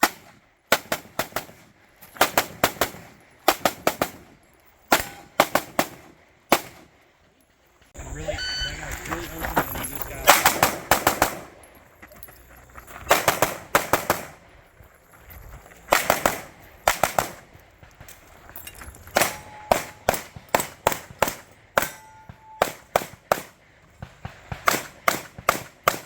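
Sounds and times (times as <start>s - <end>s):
rapid gunfire: 0.0s - 1.6s, 10.3s - 11.5s, 13.1s - 14.3s, 15.9s - 17.4s, 22.6s - 26.0s
short ringing tone: 8.2s - 9.0s.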